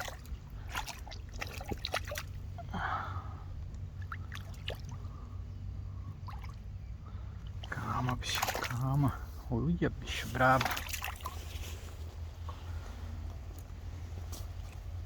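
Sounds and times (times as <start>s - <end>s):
fish splashing in water: 0.0s - 2.6s, 4.0s - 5.2s, 6.2s - 6.8s, 7.4s - 9.0s, 10.5s - 11.8s.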